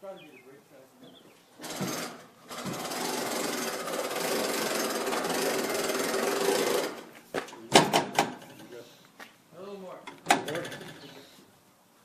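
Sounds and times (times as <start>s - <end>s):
electric winch running: 1.6s - 7.1s.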